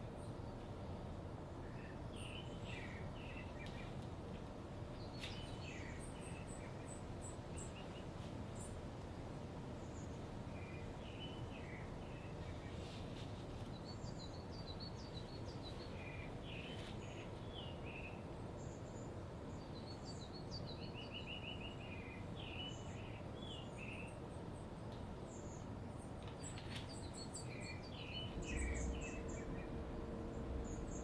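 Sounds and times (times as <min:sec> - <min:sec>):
low background rush: 0:00.0 - 0:31.0
birds chirping and whistling: 0:27.1 - 0:31.0.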